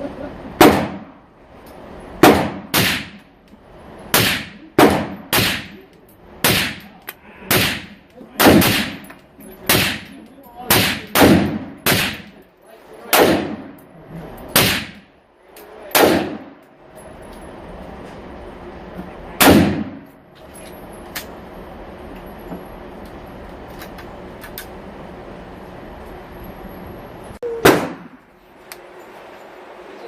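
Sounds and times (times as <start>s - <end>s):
rifle gunshots: 0.6s - 1.1s, 2.2s - 3.2s, 4.1s - 5.8s, 6.4s - 6.9s, 7.5s - 9.1s, 9.7s - 10.1s, 10.7s - 12.4s, 13.1s - 13.7s, 14.6s - 15.0s, 15.9s - 16.6s, 19.4s - 20.1s.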